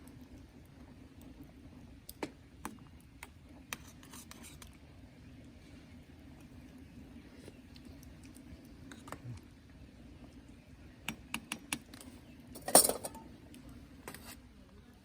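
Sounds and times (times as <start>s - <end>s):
camp cookware clinking: 11.8s - 13.4s
cookware clatter: 12.6s - 13.3s.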